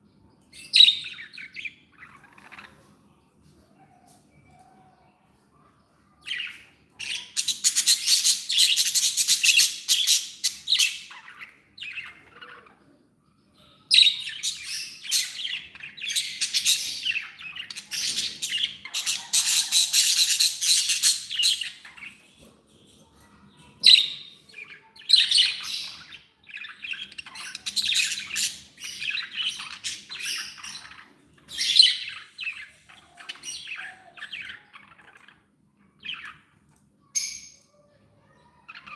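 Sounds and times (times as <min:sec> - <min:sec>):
budgerigars chattering: 0:14.0 - 0:22.2.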